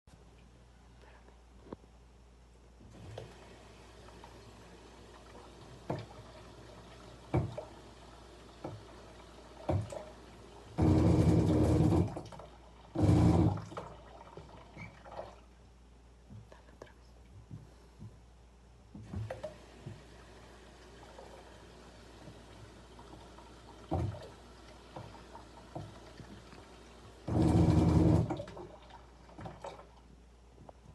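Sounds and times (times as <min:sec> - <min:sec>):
water filter humming: 0:02.8 - 0:16.4, 0:17.2 - 0:30.9
water sounds: 0:03.0 - 0:15.6, 0:19.0 - 0:30.1.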